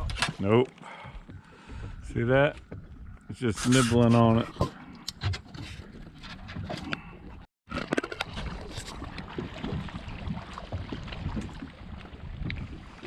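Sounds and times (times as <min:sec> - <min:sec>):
wind and water rushing: 0:08.1 - 0:13.0.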